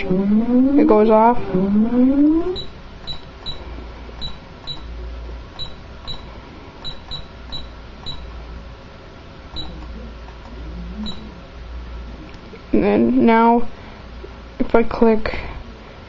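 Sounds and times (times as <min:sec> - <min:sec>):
alarm keypad beeps: 0:00.0 - 0:03.6, 0:04.2 - 0:04.9, 0:05.6 - 0:08.2, 0:09.6 - 0:09.8
low hum: 0:00.0 - 0:08.8.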